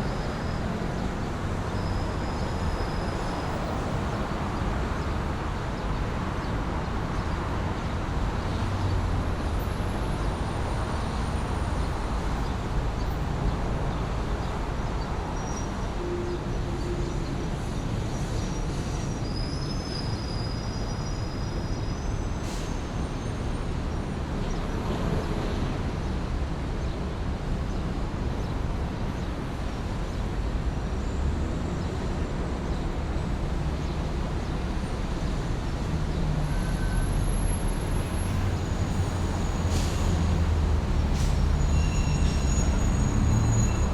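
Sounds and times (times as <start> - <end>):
traffic rumble: 0.0 - 43.9
faint high squeals: 41.2 - 43.9.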